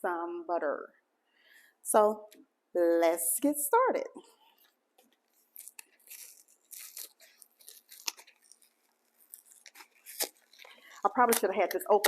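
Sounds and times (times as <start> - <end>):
packaging tearing and crinkling: 5.3 - 12.0.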